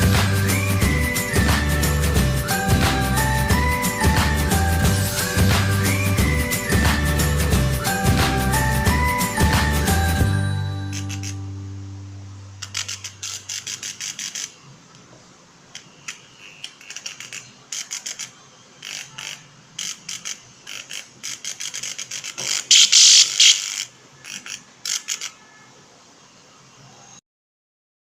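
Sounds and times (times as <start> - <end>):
rapid mechanical clicking: 15.8 - 25.4.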